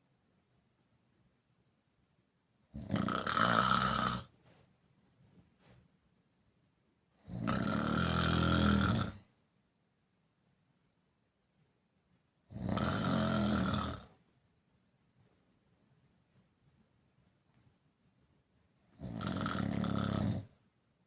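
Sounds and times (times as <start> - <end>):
person snoring: 2.8 - 4.3, 7.4 - 9.2, 12.5 - 14.1, 19.0 - 20.5.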